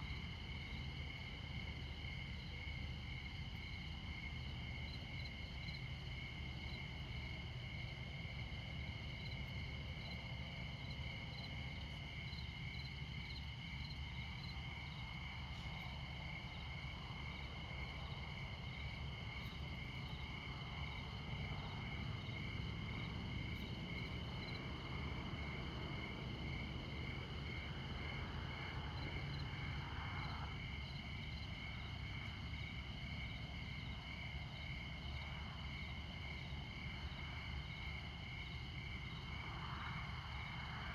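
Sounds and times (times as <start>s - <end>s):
crickets chirping: 0.0s - 40.9s
distant highway traffic rumble: 0.0s - 40.9s
passing vehicle: 20.2s - 32.5s.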